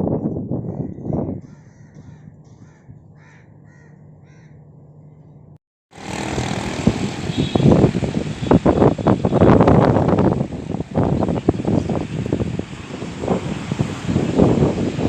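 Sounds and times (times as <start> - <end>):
wind buffeting microphone: 0.0 - 3.6, 6.0 - 15.0
crows cawing: 0.8 - 4.6.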